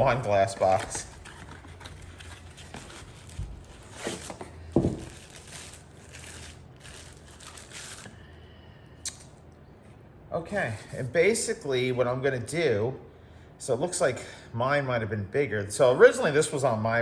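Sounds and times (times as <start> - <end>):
cardboard packaging rustling: 0.0 - 8.2.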